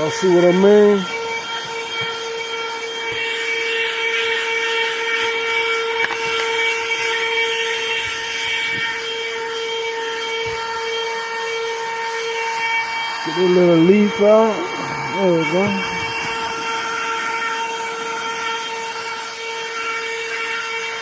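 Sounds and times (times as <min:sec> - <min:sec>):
handheld vacuum cleaner whine: 0:00.0 - 0:21.0.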